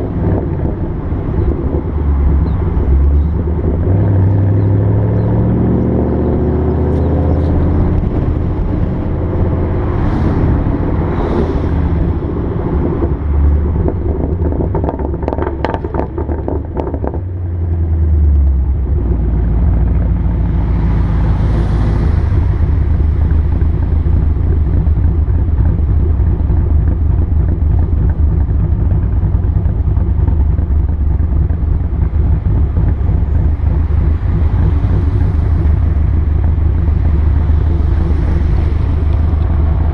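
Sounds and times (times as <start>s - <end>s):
car engine droning: 0.0s - 39.9s
exhaust pops and crackles: 11.7s - 20.5s, 22.0s - 39.9s.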